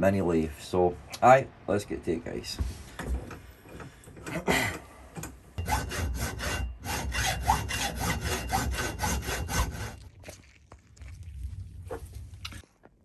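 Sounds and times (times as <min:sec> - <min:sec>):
hand saw cutting: 0:05.6 - 0:10.1.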